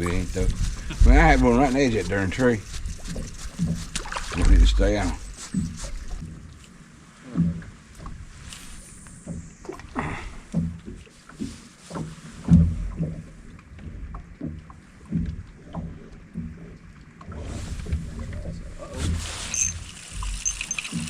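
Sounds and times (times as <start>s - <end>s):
steady hiss: 0.0s - 3.8s, 8.3s - 12.1s, 18.8s - 21.0s.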